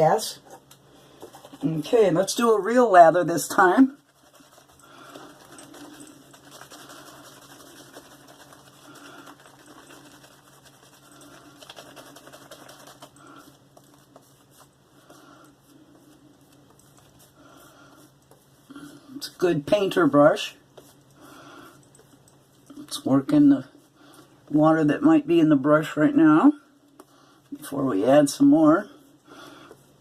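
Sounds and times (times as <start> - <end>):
shaving brush swirling on soap: 1.3 - 21.1.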